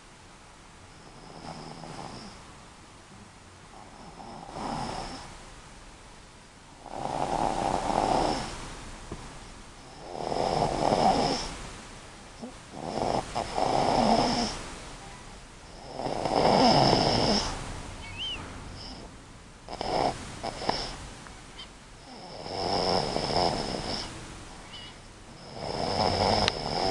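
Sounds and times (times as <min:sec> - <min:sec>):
pet snoring: 0:01.0 - 0:02.4, 0:03.7 - 0:05.3, 0:06.8 - 0:08.6, 0:09.9 - 0:11.5, 0:12.4 - 0:14.6, 0:15.7 - 0:17.6, 0:18.8 - 0:19.1, 0:19.7 - 0:21.0, 0:22.0 - 0:24.2, 0:24.8 - 0:26.9.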